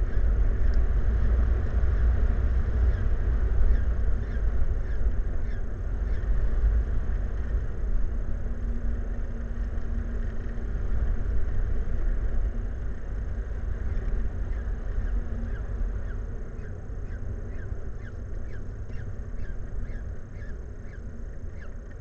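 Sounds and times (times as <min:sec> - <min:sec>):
faint steady hum: 0:00.0 - 0:22.0
low outdoor rumble: 0:00.0 - 0:22.0
faint bird chirps: 0:02.8 - 0:06.4, 0:13.8 - 0:22.0.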